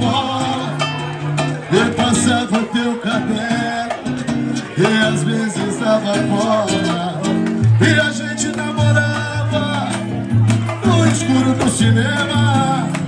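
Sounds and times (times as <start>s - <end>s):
band playing live music: 0.0s - 13.0s.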